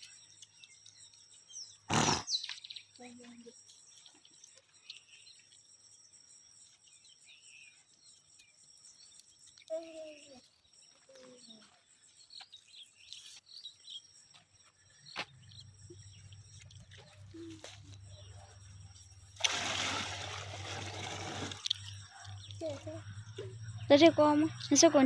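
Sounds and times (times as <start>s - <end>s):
faint bird chirps: 0.0s - 19.2s, 21.6s - 25.0s
water pouring and splashing: 19.3s - 22.0s.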